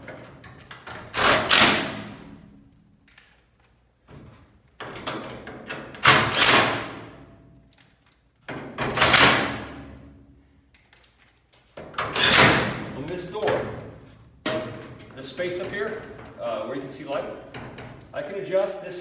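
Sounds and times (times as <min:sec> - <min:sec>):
garage door hardware clattering: 0:00.0 - 0:07.2, 0:07.9 - 0:10.1, 0:10.8 - 0:16.5, 0:17.2 - 0:18.2.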